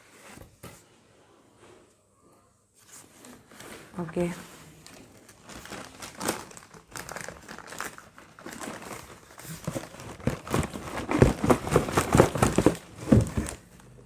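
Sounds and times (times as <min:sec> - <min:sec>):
packaging crinkling: 0:04.8 - 0:13.9.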